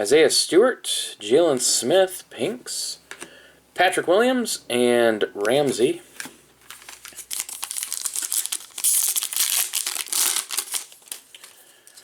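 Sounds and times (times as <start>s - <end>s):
card pack wrapper crinkling: 6.2s - 12.0s.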